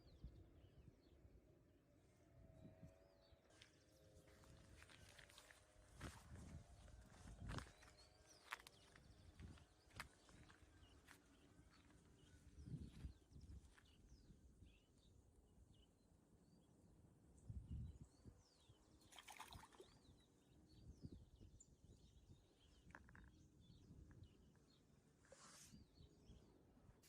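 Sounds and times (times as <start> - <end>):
wind rumbling on microphone: 4.3 - 11.2, 11.8 - 14.8, 17.4 - 18.8, 20.1 - 24.6
small bird chirps: 22.5 - 24.7.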